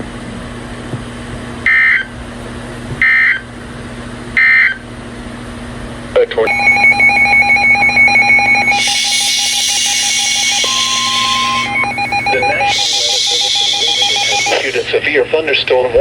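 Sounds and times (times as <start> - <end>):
fluttering electronic alert tone: 6.5 - 14.9
warbling data tones: 6.5 - 15.0
radio static: 7.9 - 16.0.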